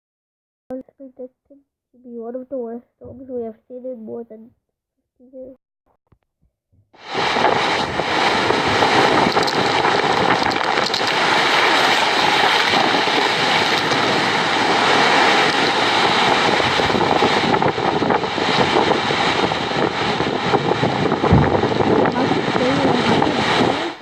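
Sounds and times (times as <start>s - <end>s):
wind blowing across microphone: 7.0s - 24.0s.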